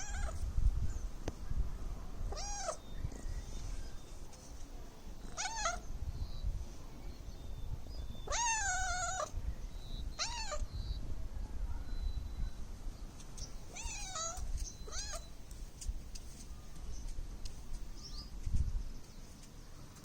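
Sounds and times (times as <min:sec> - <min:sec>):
cat meowing: 0:00.0 - 0:00.4, 0:02.3 - 0:02.8, 0:05.2 - 0:05.8, 0:08.3 - 0:09.4, 0:10.1 - 0:10.6, 0:13.7 - 0:15.3.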